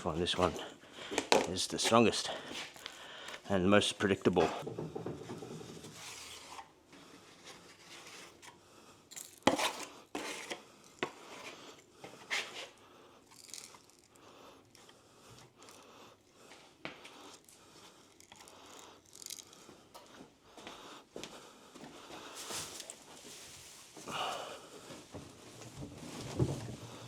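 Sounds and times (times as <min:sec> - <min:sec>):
light scraping and crunching: 0:07.4 - 0:15.8, 0:22.3 - 0:24.1.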